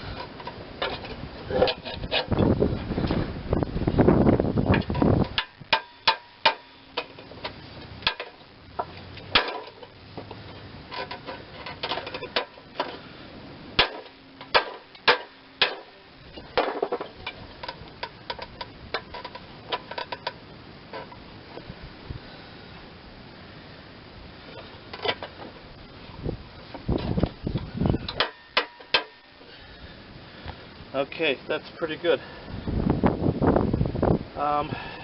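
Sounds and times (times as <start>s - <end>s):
hammer striking steel: 5.4s - 7.1s.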